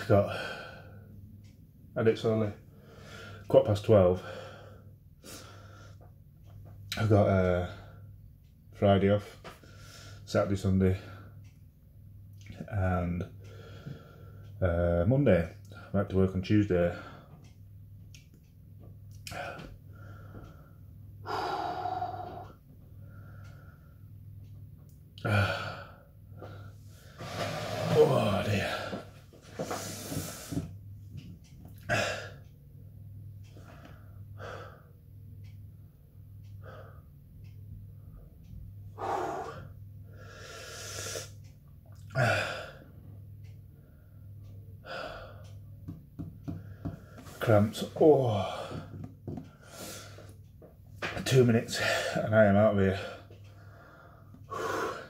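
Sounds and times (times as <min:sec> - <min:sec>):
man breathing heavily: 0:02.7 - 0:03.5, 0:04.2 - 0:06.1, 0:13.4 - 0:14.6, 0:19.3 - 0:24.1, 0:25.2 - 0:30.7, 0:33.5 - 0:35.0, 0:36.5 - 0:37.1, 0:38.9 - 0:41.4, 0:42.1 - 0:42.9, 0:44.8 - 0:45.6, 0:46.4 - 0:47.5, 0:48.2 - 0:50.4, 0:52.9 - 0:55.0
man breathing heavily and gasping: 0:19.3 - 0:23.8, 0:39.0 - 0:41.3, 0:42.1 - 0:42.9, 0:53.1 - 0:55.0.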